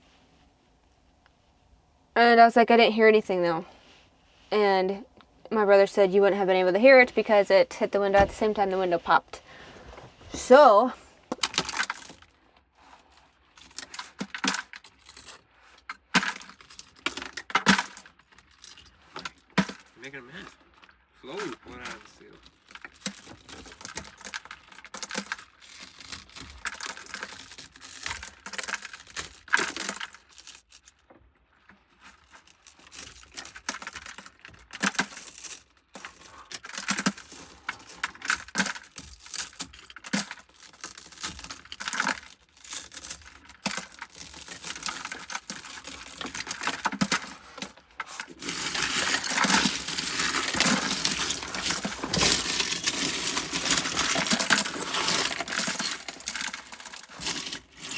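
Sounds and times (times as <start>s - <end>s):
broken glass pieces rattling: 13.2s - 20.9s, 21.7s - 57.9s.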